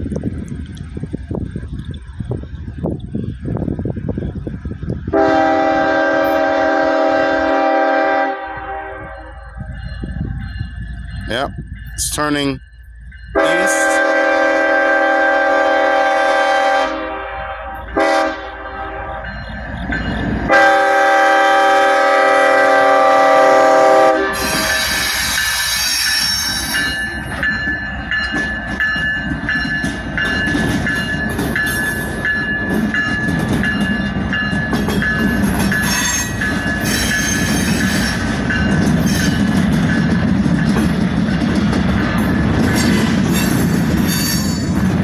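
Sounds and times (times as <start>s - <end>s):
locomotive air horn blasts: 5.2s - 9.3s, 13.4s - 19.4s, 20.5s - 25.0s
train wheels squealing: 24.3s - 40.1s, 42.6s - 44.9s.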